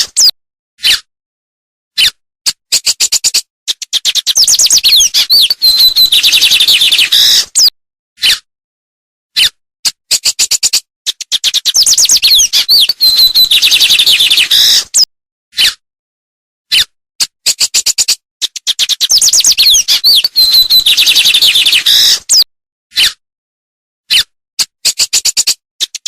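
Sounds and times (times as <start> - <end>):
songbird singing: 4.0 - 7.7, 11.3 - 14.8, 18.8 - 22.4.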